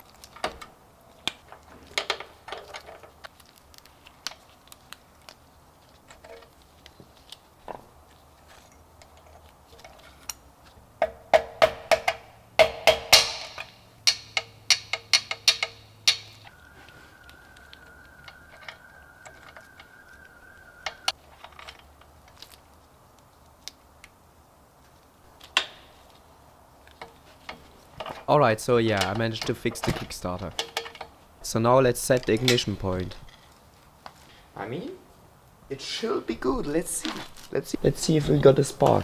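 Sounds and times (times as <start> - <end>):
sharp metal knocks and taps: 11.0 - 16.4
faint steady high tone: 16.5 - 21.2.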